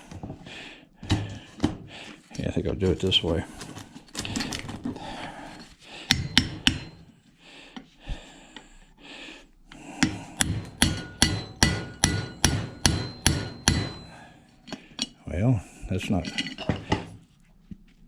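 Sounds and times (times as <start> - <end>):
hammer blows on metal: 10.0 - 14.2.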